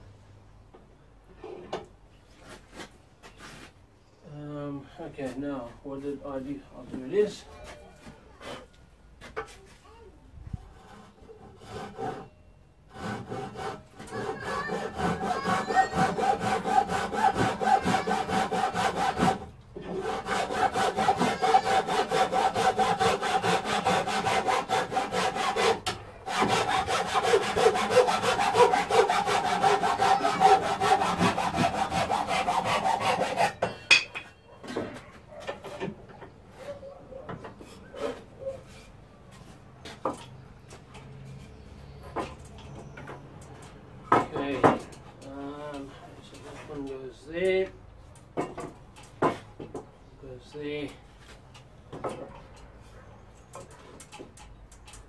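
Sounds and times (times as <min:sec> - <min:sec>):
handsaw cutting wood: 0:10.8 - 0:12.3, 0:12.9 - 0:33.6.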